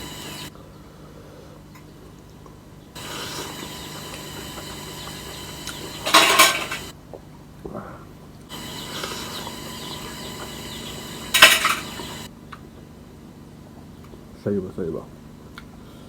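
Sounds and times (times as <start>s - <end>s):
plate and cutlery clinking: 5.7s - 6.9s, 11.2s - 12.3s.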